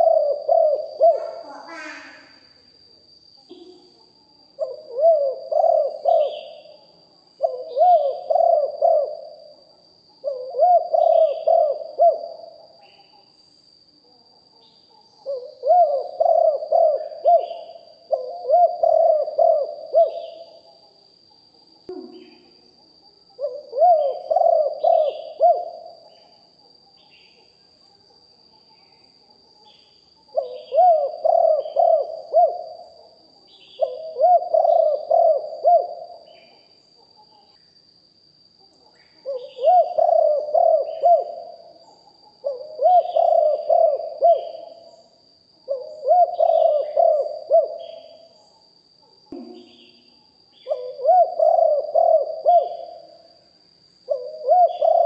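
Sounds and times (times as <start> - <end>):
dove cooing: 0.0 - 2.4, 4.6 - 13.2, 14.9 - 20.9, 21.9 - 22.6, 23.4 - 27.4, 30.3 - 37.5, 38.8 - 48.3, 49.3 - 53.3, 54.1 - 55.0.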